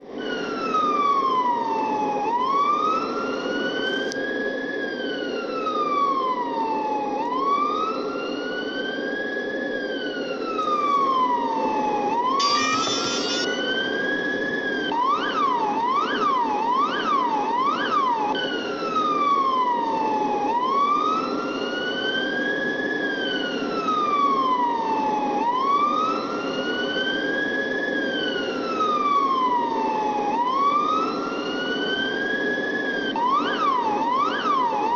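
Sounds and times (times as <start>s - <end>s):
police siren wailing: 0.1s - 34.9s
siren fast yelp: 10.5s - 15.6s
harsh horn blast: 12.4s - 13.7s.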